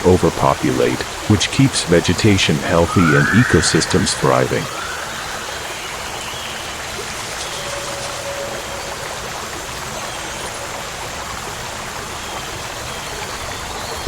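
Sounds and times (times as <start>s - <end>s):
steady rushing noise: 1.0s - 9.7s.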